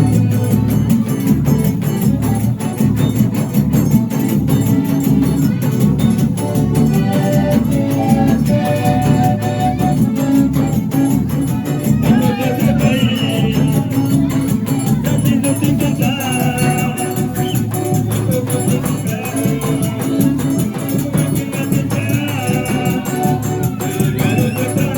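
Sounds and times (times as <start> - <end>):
fast percussion beat: 0.0 - 24.9
person singing: 6.7 - 24.9.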